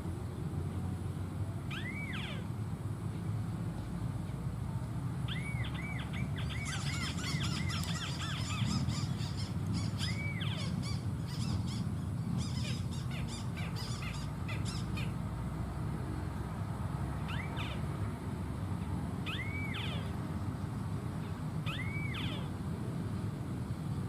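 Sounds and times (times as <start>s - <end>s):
crakes calling: 1.7s - 2.6s, 5.3s - 15.5s, 17.1s - 22.6s.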